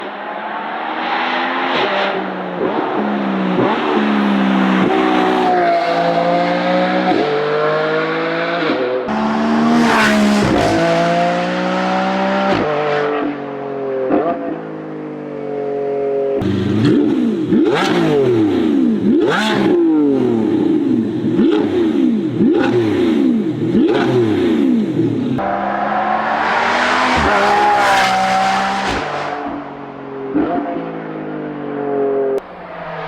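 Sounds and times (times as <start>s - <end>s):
sports car engine accelerating hard: 0.4s - 33.0s.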